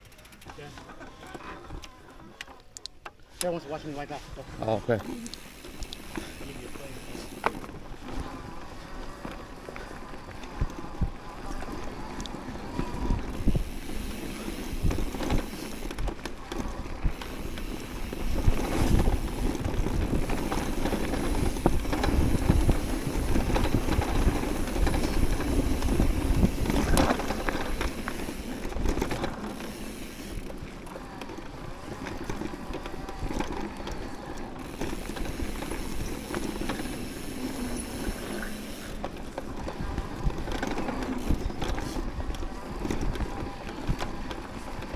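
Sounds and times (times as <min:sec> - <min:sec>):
bike tyres rolling on dirt: 0:00.0 - 0:02.7, 0:03.3 - 0:44.9
bike knocking and rattling: 0:00.0 - 0:44.9.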